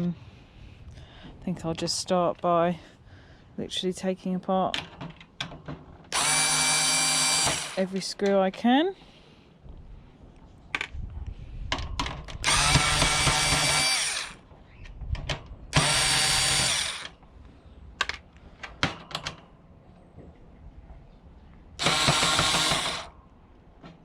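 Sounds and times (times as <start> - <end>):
power drill driving screws: 6.1 - 8.0, 12.4 - 14.4, 15.7 - 17.2, 21.8 - 23.1
clicks and knocks of handling: 18.0 - 19.5.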